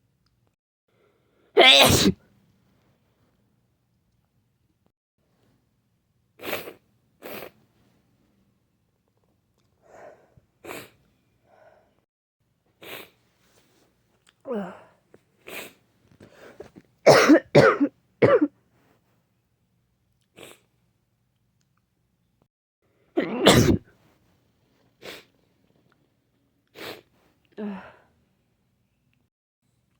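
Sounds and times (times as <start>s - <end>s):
person coughing: 1.6s - 2.2s, 17.1s - 18.5s, 23.2s - 23.8s
person sneezing: 1.6s - 2.2s, 17.1s - 18.5s, 23.2s - 23.8s.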